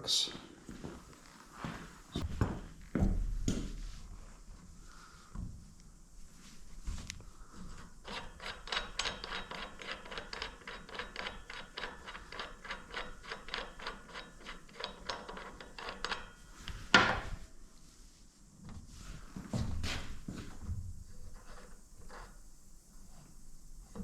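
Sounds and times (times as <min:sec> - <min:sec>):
ratchet wrench clicking: 0:08.1 - 0:16.4.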